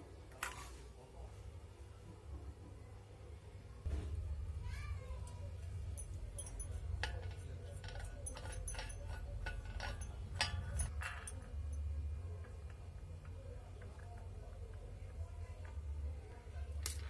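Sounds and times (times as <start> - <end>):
steady low hum: 3.2 - 17.0
kitchen utensils clinking: 5.9 - 11.9.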